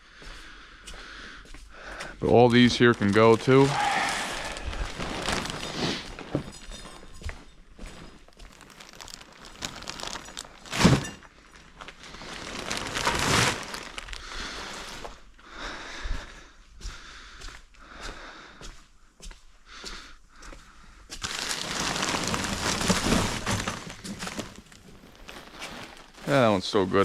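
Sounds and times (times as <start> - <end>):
plastic bags rustling: 2.2 - 15.3, 21.2 - 27.0.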